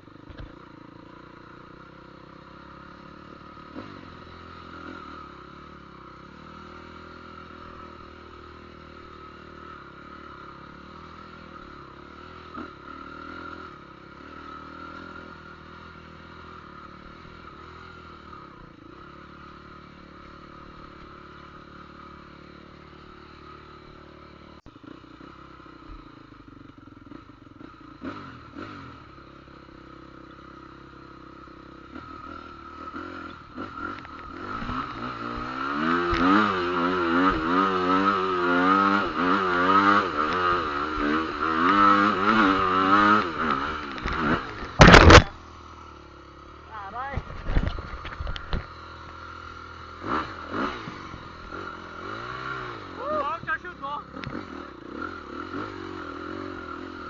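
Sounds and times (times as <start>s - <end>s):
motor running: 43.9s - 45.4s.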